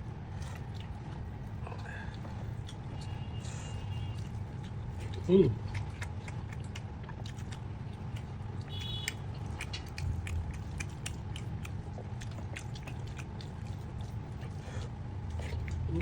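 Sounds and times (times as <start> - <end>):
person chewing food: 0.0 - 16.0
wet mouth clicks: 3.9 - 14.6.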